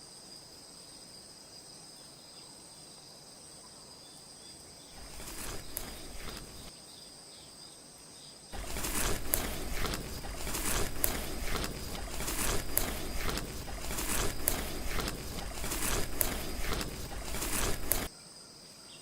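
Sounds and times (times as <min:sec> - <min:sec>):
fluttering rush: 0:05.0 - 0:06.7, 0:08.6 - 0:18.1
rustling noise: 0:05.0 - 0:06.7, 0:08.6 - 0:18.1.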